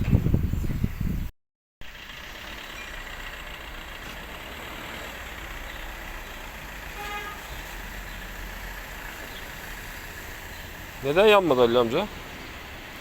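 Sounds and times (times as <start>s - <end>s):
road noise: 1.8s - 13.0s
truck engine drone: 1.8s - 13.0s.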